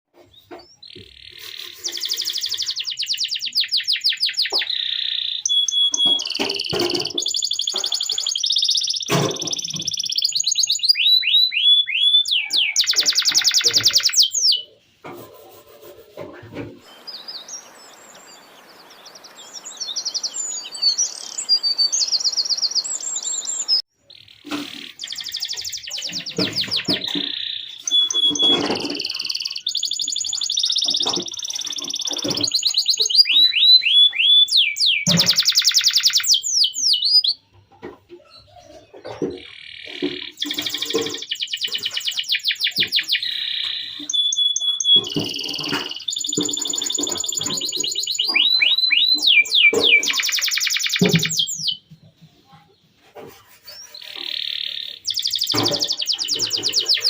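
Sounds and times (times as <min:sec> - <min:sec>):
canary singing trills: 0:00.2 - 0:16.1, 0:16.8 - 0:57.0
background hiss: 0:14.7 - 0:23.8.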